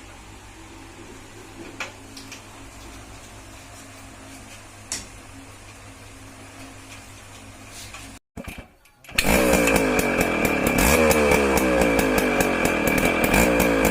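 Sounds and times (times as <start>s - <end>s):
motorcycle engine rattling: 8.4s - 13.9s.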